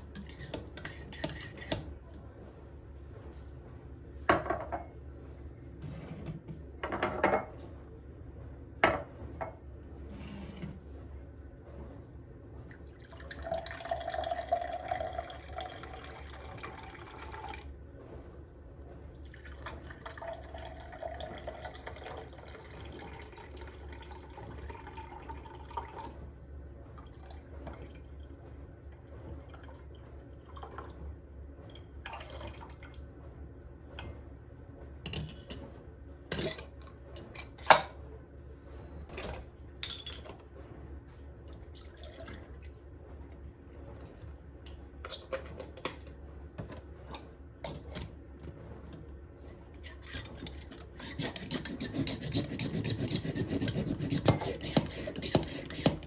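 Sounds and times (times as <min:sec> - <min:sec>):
water running: 0:12.8 - 0:17.7, 0:19.2 - 0:28.4, 0:41.5 - 0:42.8.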